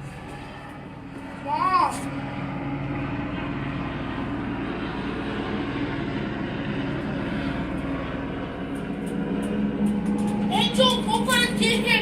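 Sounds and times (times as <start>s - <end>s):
helicopter rotor and engine drone: 0.0s - 12.0s.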